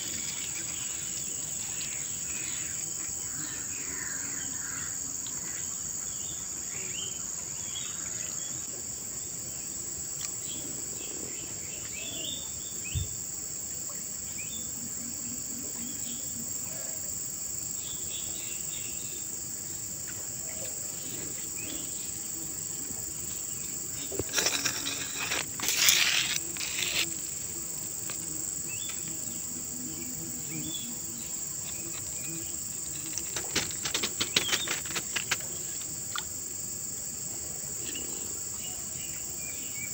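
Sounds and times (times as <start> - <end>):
crickets droning: 0.0 - 39.9
crackling noise: 24.0 - 27.4.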